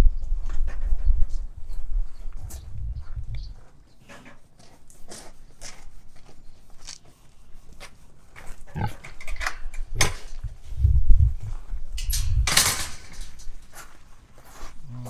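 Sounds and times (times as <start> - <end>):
clicks and rustles: 7.7 - 14.6
pig grunting: 8.5 - 11.6.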